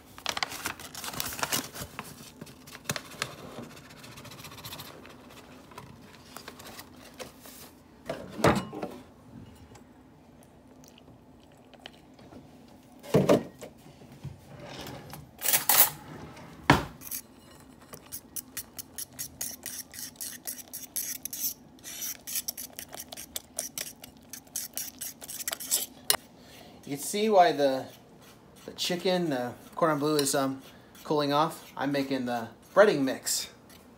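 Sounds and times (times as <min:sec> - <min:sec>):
dishes clattering and knocking: 0:08.0 - 0:09.8.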